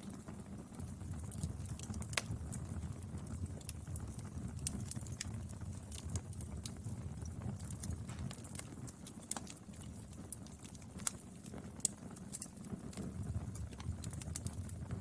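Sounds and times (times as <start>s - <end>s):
fire crackles and pops: 0.0s - 15.0s
fire low rumble: 0.0s - 15.0s.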